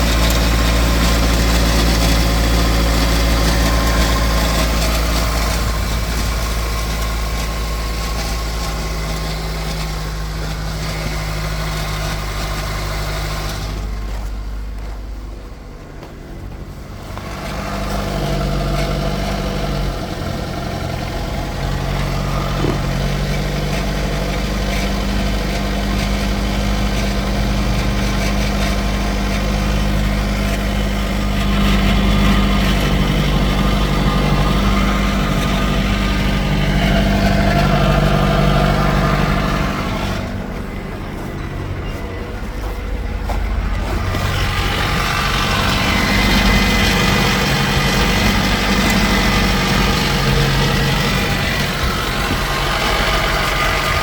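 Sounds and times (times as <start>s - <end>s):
car engine idling: 0.0s - 54.0s.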